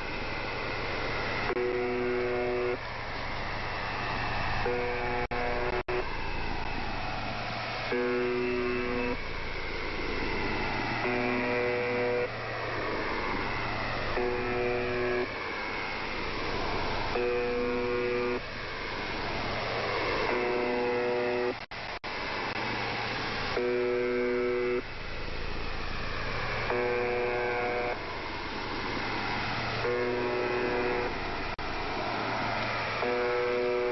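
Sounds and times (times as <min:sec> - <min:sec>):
harsh buzzer blasts: 0:01.2 - 0:02.8, 0:04.6 - 0:06.2, 0:07.8 - 0:09.2, 0:10.0 - 0:21.7, 0:22.6 - 0:24.9, 0:26.4 - 0:31.6, 0:32.5 - 0:33.9.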